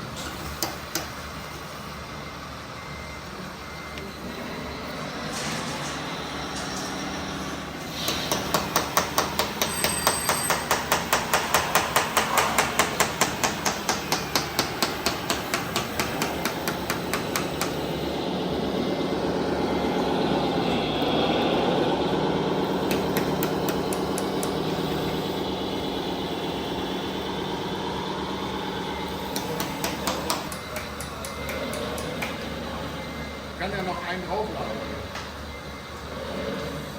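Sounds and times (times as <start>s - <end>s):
electric-hydraulic motor hum: 0.0s - 36.9s
rapid machine hammering: 7.9s - 18.2s, 22.6s - 27.5s, 28.2s - 32.6s.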